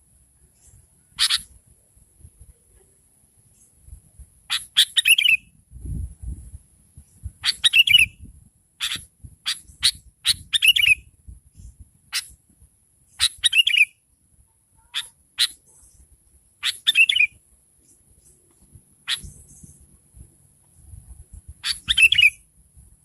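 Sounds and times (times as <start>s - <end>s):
bird chirping: 0.4s - 1.5s, 4.5s - 5.6s, 7.0s - 12.4s, 13.1s - 14.1s, 14.7s - 20.0s, 21.6s - 22.5s.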